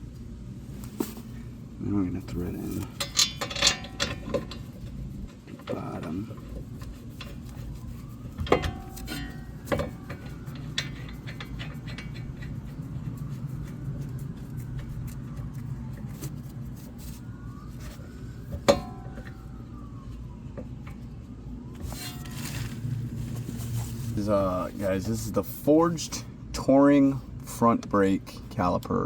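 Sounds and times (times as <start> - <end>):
low steady hum: 0.0 - 29.0
metal tools clanking: 2.6 - 4.8, 8.4 - 12.8.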